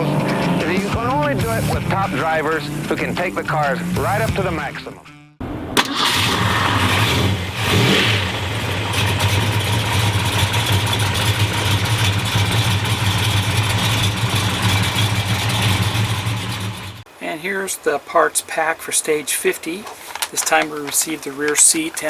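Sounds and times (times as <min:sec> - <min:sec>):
car engine running hard: 0:05.6 - 0:17.1.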